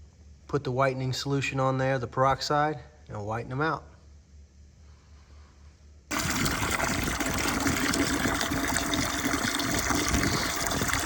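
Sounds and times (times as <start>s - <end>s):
water filling a container: 6.1s - 11.0s.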